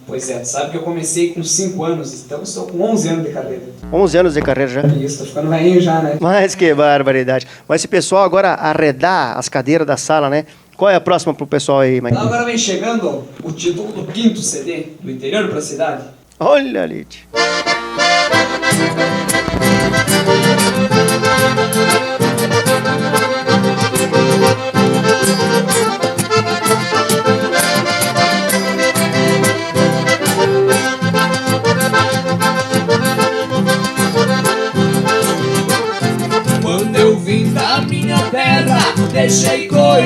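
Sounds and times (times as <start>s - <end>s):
accordion melody: 3.8s - 5.2s, 17.3s - 40.0s
rhythmic bass accompaniment: 3.8s - 5.2s, 17.3s - 38.2s.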